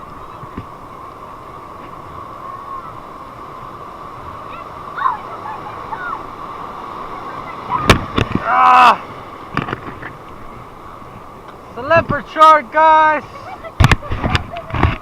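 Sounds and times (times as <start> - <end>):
ocean surf washing on beach: 0.0 - 15.0.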